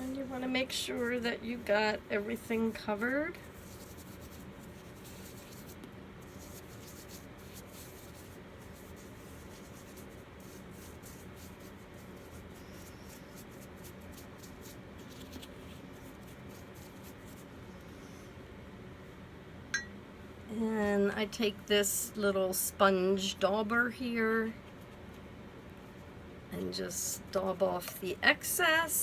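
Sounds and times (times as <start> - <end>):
brush scratching on vinyl: 0.0 - 17.5
faint steady hum: 0.0 - 29.0.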